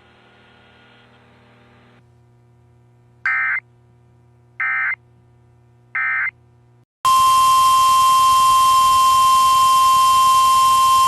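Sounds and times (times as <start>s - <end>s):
steady warning alarm tone: 7.1s - 11.0s.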